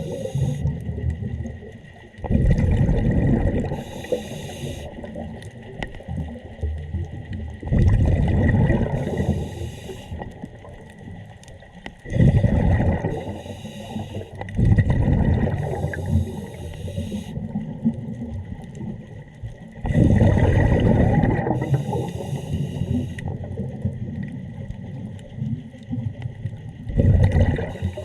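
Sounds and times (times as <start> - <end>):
regulator inhalation hiss: 0.0 - 0.6, 3.7 - 5.0, 9.0 - 10.2, 13.1 - 14.4, 15.6 - 17.4, 21.6 - 23.2
exhaled bubbles gushing: 0.0 - 28.0.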